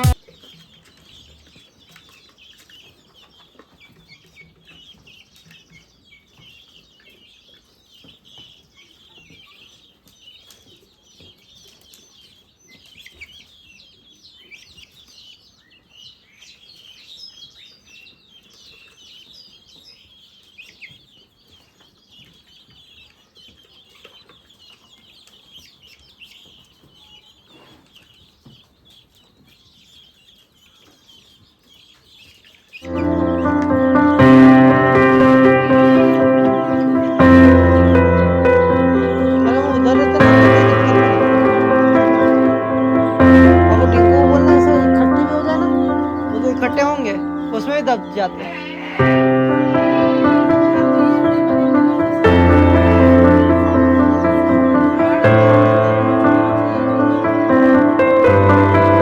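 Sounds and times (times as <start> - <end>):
young birds peeping: 0.0 - 59.0.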